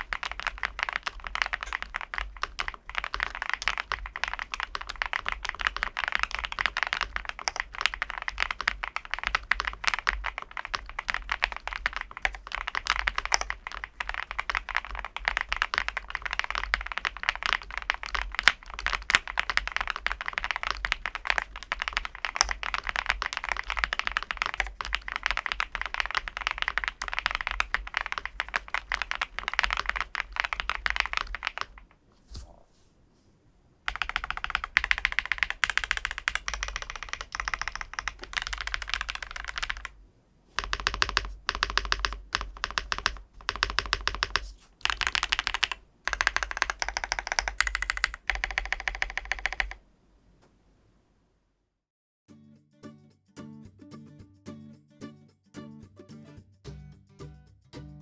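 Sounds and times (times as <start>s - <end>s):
mechanical keyboard typing: 0.0s - 32.6s, 33.9s - 49.9s.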